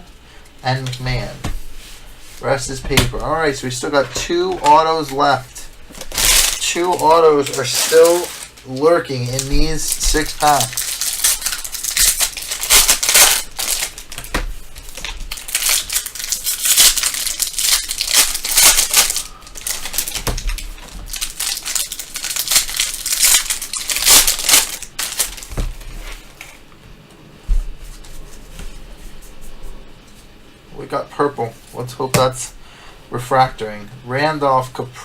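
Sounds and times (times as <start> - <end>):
wrappers torn open and crinkled: 5.9 - 26.5.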